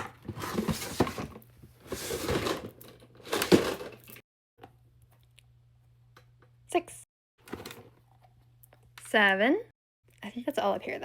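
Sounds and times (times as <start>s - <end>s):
plastic toys crinkling and clattering: 0.3s - 4.2s.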